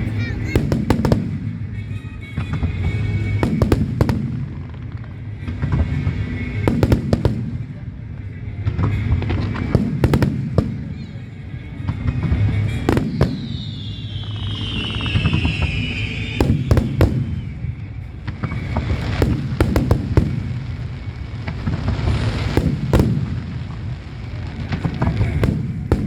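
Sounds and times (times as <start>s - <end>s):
fireworks bangs and crackles: 0.0s - 26.0s
whistling firework shell: 11.9s - 23.8s, 24.8s - 26.0s.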